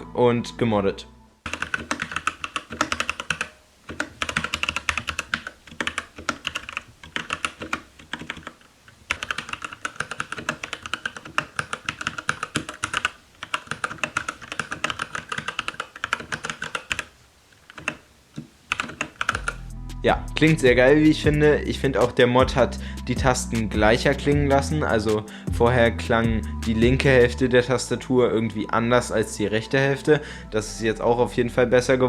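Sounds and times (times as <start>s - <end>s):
mechanical keyboard typing: 1.5s - 19.6s.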